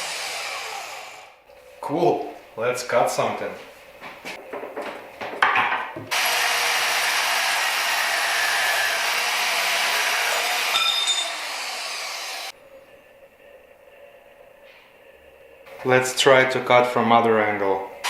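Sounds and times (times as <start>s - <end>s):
bandsaw cutting metal: 0.0s - 1.4s, 6.1s - 12.5s.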